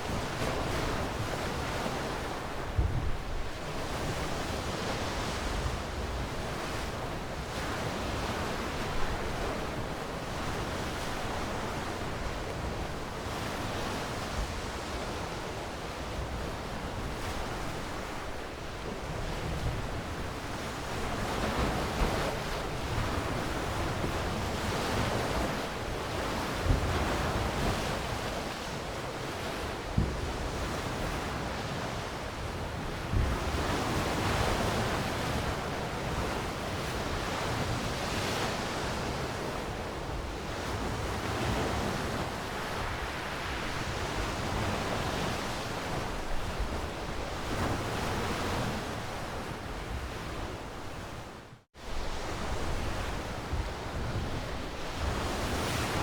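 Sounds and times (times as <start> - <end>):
wind rumble on microphone: 0.0 - 56.0
sea waves breaking on shore: 13.1 - 56.0.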